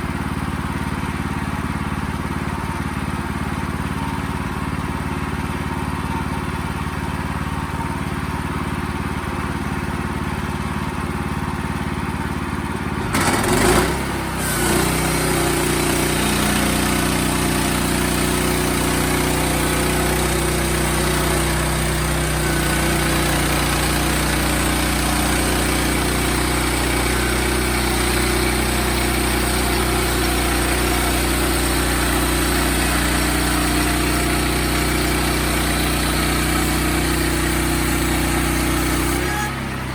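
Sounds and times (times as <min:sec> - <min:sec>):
sawmill engine running: 0:00.0 - 0:39.9.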